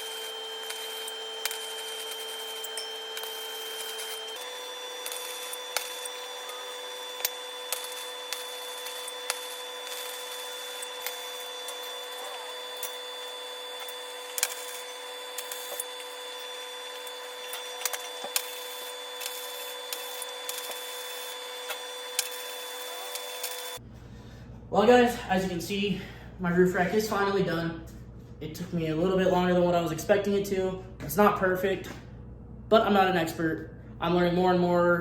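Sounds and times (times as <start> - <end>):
welder hum and hiss: 0.0 - 23.8
welding pops: 0.0 - 23.8.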